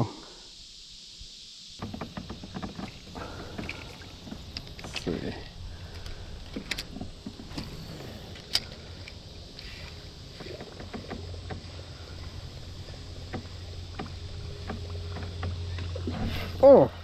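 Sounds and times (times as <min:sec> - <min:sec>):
small clicks and knocks: 0:01.8 - 0:11.8, 0:13.2 - 0:16.0
low steady rumble: 0:02.0 - 0:17.0.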